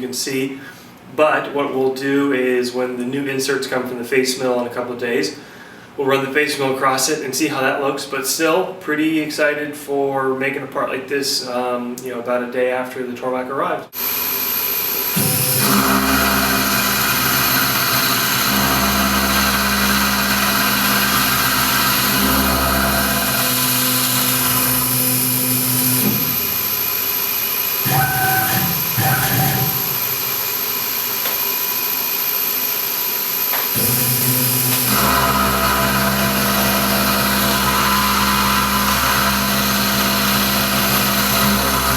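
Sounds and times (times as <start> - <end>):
milling machine cutting metal: 14.0 - 41.9.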